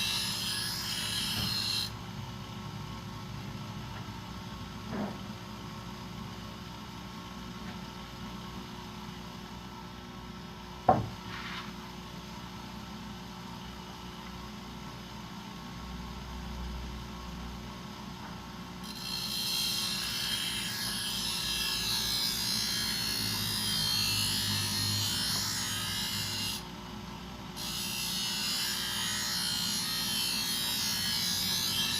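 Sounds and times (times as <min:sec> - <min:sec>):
blade grinding on grinder wheel: 0:00.0 - 0:01.9, 0:18.8 - 0:26.6, 0:27.6 - 0:31.9.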